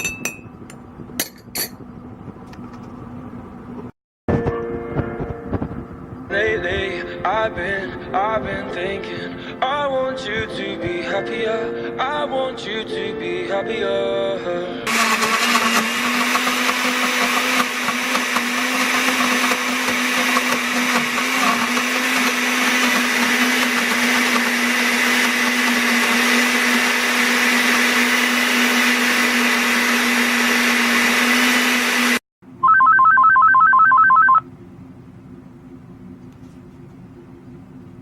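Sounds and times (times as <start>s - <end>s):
electric motor appliance running: 14.8s - 32.2s
electronic beeps trill: 32.6s - 34.4s.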